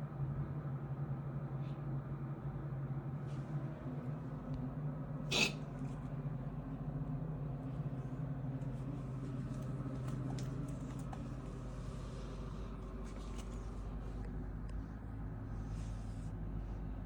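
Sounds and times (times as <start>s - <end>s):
steady low hum: 0.0s - 17.0s
animal coughing: 5.2s - 5.8s.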